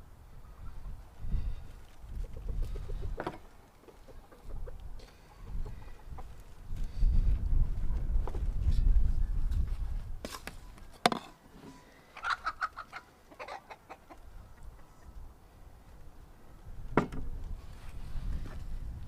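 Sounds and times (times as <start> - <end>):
chickens clucking: 0.4 - 6.8, 11.8 - 15.6.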